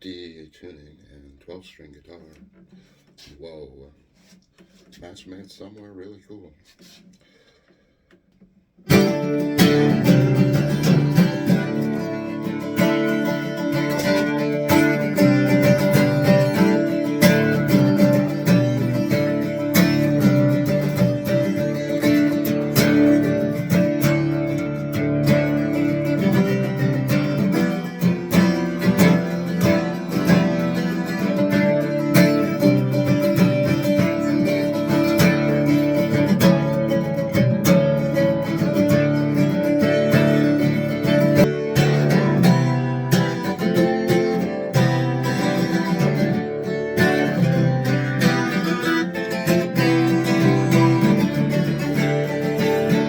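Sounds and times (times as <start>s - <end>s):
twelve-string acoustic guitar: 6.8s - 53.0s.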